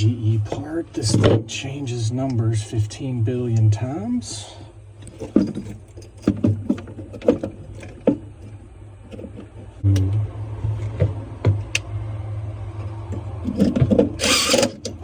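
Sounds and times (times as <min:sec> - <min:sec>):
steady low hum: 0:00.0 - 0:15.0
clicks and knocks of parts: 0:12.8 - 0:15.0.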